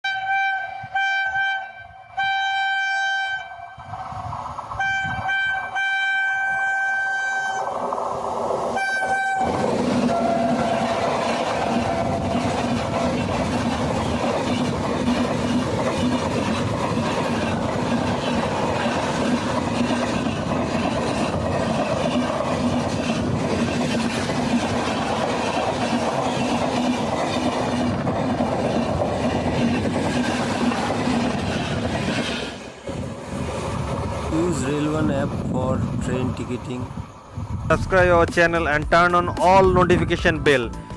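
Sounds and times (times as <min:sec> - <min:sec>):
locomotive horn blasts: 0:00.0 - 0:03.8, 0:04.8 - 0:07.7, 0:08.8 - 0:10.9, 0:11.7 - 0:12.4
train wheels rumbling on rails: 0:03.4 - 0:40.3.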